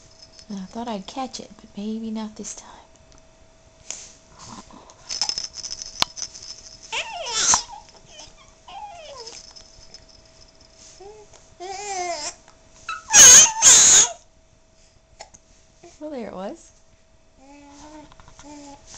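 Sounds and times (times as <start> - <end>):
baby cooing and babbling: 7.0 - 9.3, 11.0 - 12.4, 17.4 - 18.8
loud baby vocal burst: 12.9 - 14.2.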